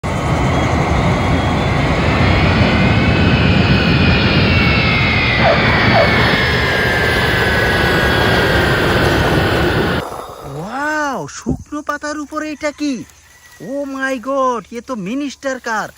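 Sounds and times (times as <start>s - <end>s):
jet engine roar and whine: 0.0s - 10.6s.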